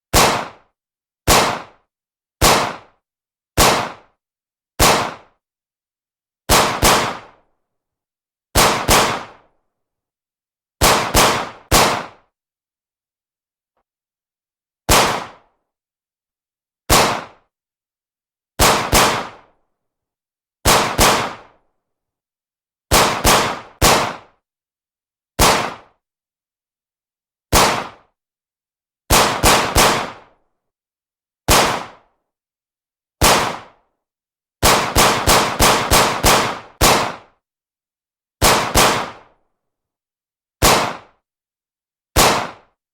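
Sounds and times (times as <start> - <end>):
pistol shots echoing: 1.3 - 1.7, 8.6 - 9.3, 14.9 - 15.3, 16.9 - 17.3, 18.6 - 19.4, 27.5 - 27.9, 29.1 - 30.2, 31.5 - 31.9, 34.6 - 37.2, 38.4 - 39.2, 40.6 - 41.0, 42.2 - 42.6.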